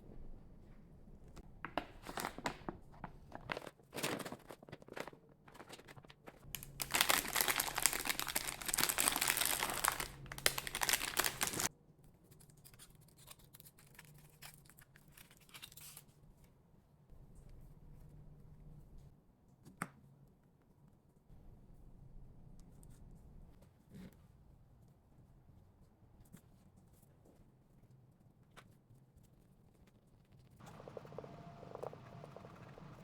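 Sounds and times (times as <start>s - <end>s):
packaging crinkling and tearing: 1.8s - 11.7s.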